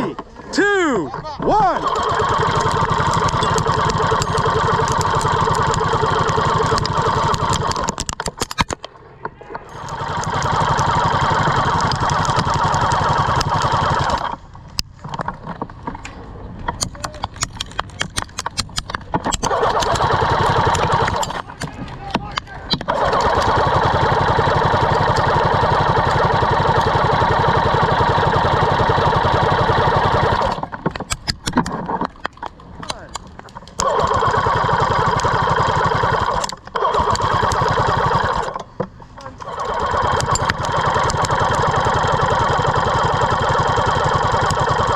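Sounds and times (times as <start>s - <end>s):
airsoft minigun firing: 1.6s - 8.9s, 16.8s - 32.0s, 32.8s - 38.6s, 39.4s - 44.9s
sharp clicks and snaps: 2.4s - 8.9s, 11.5s - 15.3s, 16.0s - 23.6s, 30.4s - 34.0s, 40.2s - 41.6s.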